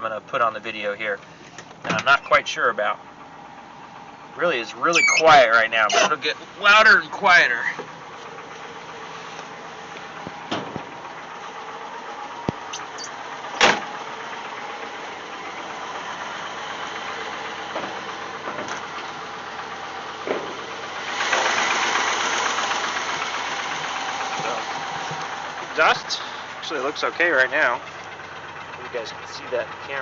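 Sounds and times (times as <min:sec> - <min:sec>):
light metallic engine tick: 0:00.0 - 0:04.8, 0:05.6 - 0:30.0
car engine idling: 0:00.0 - 0:30.0.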